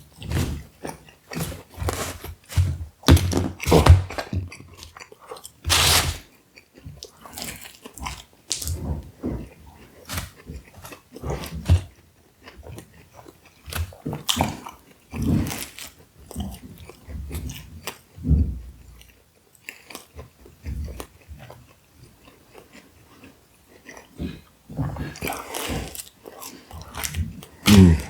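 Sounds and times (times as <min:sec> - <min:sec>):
person chewing pizza: 0:00.0 - 0:18.1, 0:19.0 - 0:28.0.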